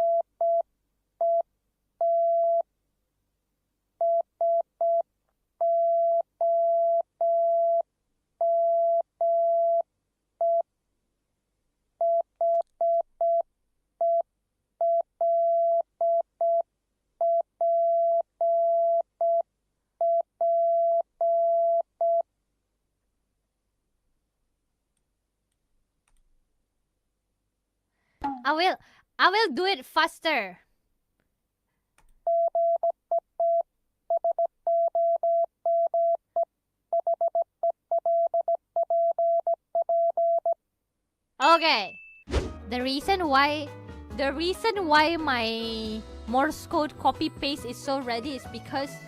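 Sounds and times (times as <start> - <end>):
morse code beeps: 0.0 - 0.6, 37.0 - 40.6.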